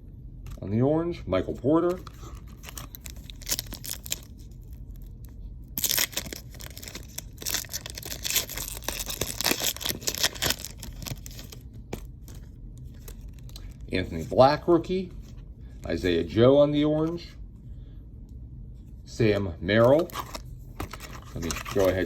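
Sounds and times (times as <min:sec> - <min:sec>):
card pack wrappers tearing: 0:01.9 - 0:04.5, 0:05.8 - 0:12.4, 0:19.8 - 0:22.0.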